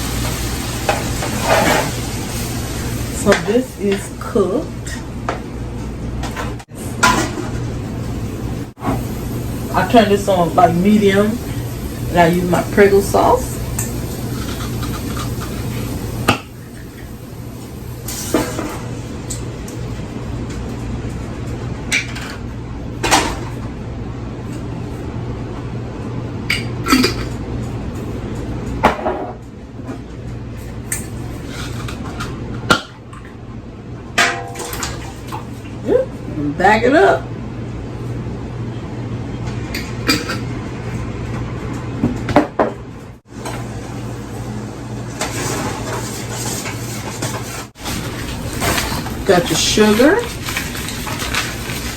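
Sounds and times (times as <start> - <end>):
pots and utensils clinking: 0.2 - 2.2, 6.3 - 7.7, 12.9 - 17.1, 34.2 - 35.5, 39.7 - 40.5
pots and utensils knocking: 34.2 - 35.1.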